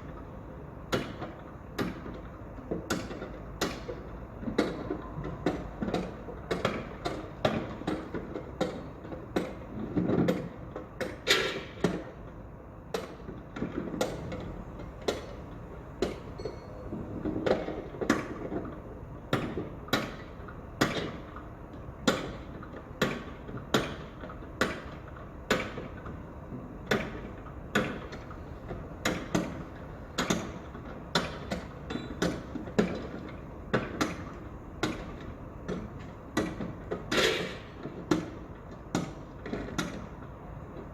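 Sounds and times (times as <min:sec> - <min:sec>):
sharp knocks and clanks: 0:12.9 - 0:21.4.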